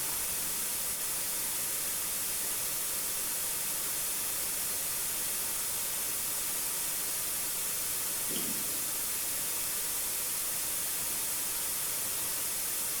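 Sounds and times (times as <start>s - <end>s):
steady high-pitched hiss: 0.0s - 13.0s
faint short low sound: 8.3s - 9.1s.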